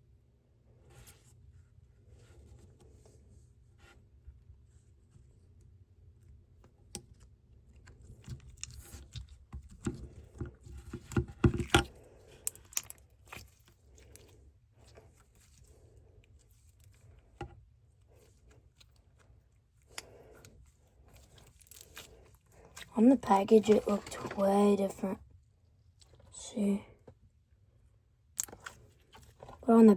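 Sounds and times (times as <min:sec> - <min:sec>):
slime squishing with sticky pops: 0:06.7 - 0:24.2, 0:28.3 - 0:29.6.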